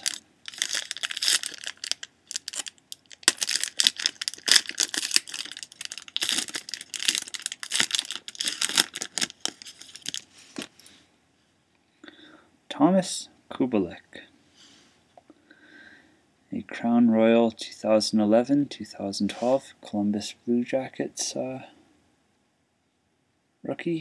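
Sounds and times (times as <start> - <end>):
wrappers torn and crinkled: 0.0 - 10.3.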